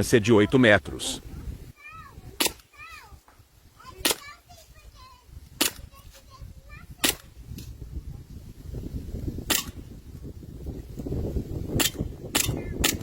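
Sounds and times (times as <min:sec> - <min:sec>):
airsoft pistol shots: 0:09.5 - 0:09.8.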